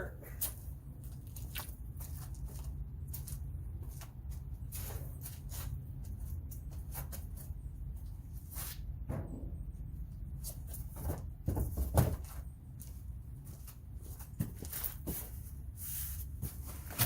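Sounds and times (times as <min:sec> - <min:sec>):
steady low rumble: 0:00.0 - 0:11.4.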